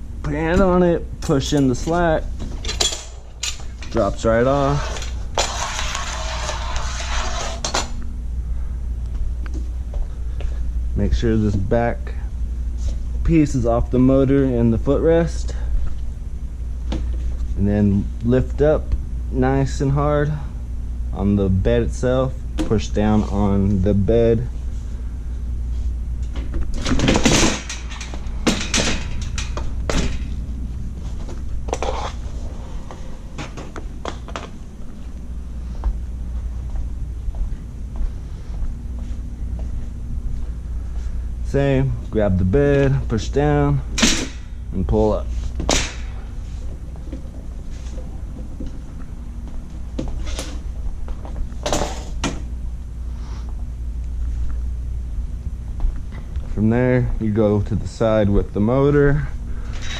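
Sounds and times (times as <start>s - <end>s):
metal bed frame clanking: 26.9s - 30.4s.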